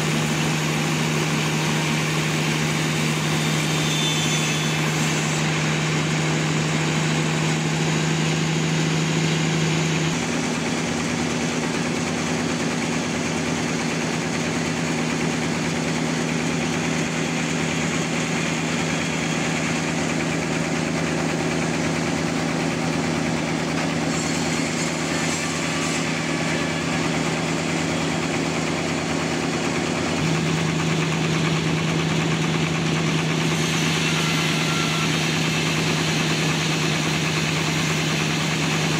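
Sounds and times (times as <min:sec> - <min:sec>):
sawmill engine humming: 0:00.0 - 0:38.9.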